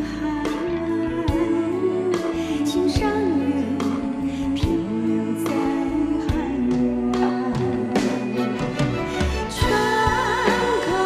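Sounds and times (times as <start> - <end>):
band accompaniment: 5.5 - 11.0.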